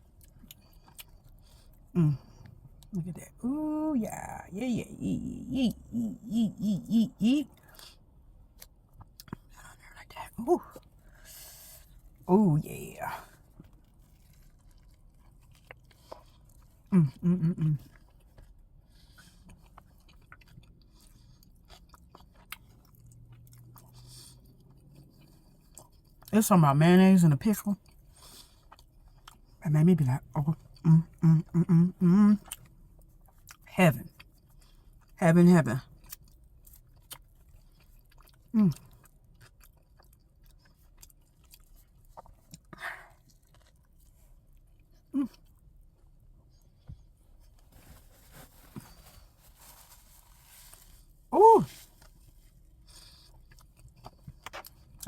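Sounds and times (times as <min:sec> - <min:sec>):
person chewing food: 0:00.0 - 0:02.9, 0:05.7 - 0:09.8, 0:13.0 - 0:26.3, 0:27.8 - 0:29.6, 0:30.6 - 0:35.2, 0:35.9 - 0:55.0
person humming with enjoyment: 0:02.0 - 0:02.2, 0:03.0 - 0:07.5, 0:17.0 - 0:17.8, 0:30.9 - 0:32.4.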